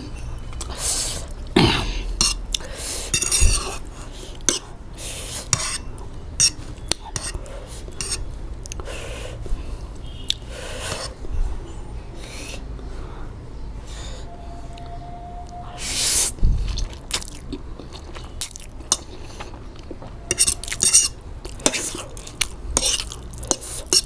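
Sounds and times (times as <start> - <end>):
chewing and slurping noodles: 16.5 - 24.0.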